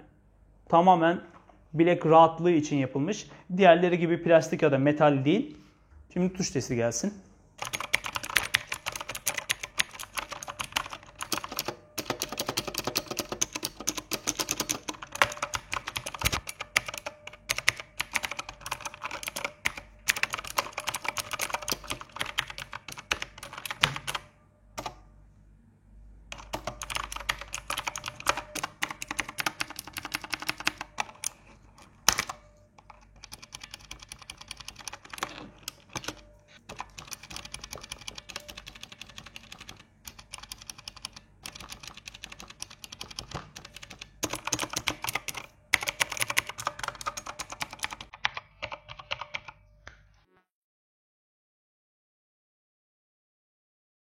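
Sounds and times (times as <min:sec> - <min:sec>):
mechanical keyboard typing: 0:07.6 - 0:25.0, 0:26.3 - 0:49.6.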